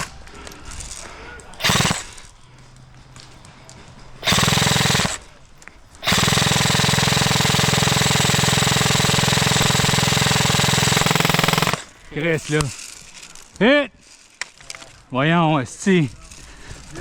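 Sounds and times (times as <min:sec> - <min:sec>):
airsoft gun full-auto bursts: 0:01.5 - 0:02.3, 0:04.2 - 0:12.7.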